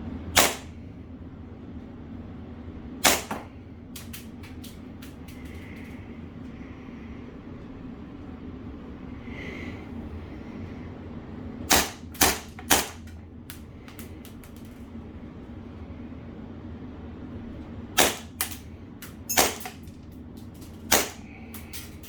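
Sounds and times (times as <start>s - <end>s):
airsoft pistol shots: 0.4s - 0.8s, 3.0s - 3.5s, 11.7s - 13.0s, 18.0s - 18.6s, 19.4s - 19.7s, 20.9s - 21.3s.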